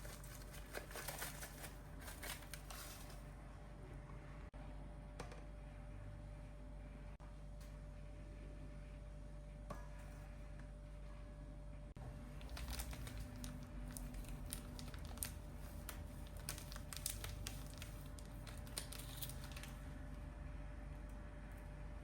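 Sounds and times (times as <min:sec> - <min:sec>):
kitchen items clicking and rustling: 0:00.0 - 0:03.2
low steady hum: 0:00.0 - 0:22.0.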